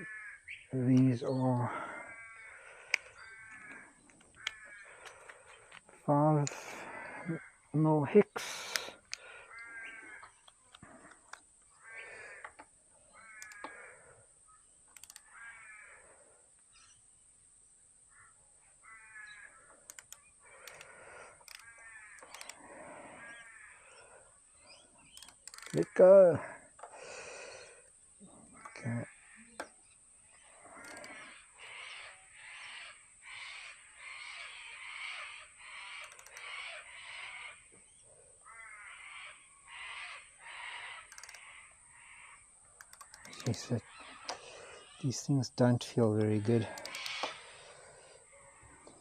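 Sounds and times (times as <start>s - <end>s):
crow cawing: 0.0s - 16.5s, 18.1s - 45.1s, 46.3s - 49.0s
sharp metallic clicks: 2.9s - 6.6s, 8.4s - 9.2s, 13.3s - 13.8s, 14.9s - 15.3s, 19.8s - 22.6s, 25.0s - 26.9s, 30.8s - 31.2s, 35.9s - 36.6s, 41.0s - 41.5s, 42.8s - 44.4s, 46.0s - 47.4s.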